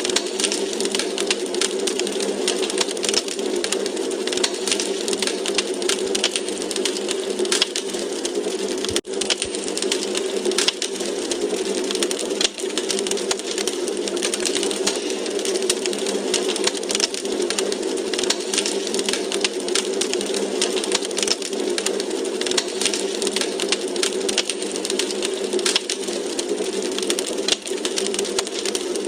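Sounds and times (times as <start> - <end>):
logs crackling in a fireplace: 0.0 - 29.0
low rush of flame: 0.0 - 29.0.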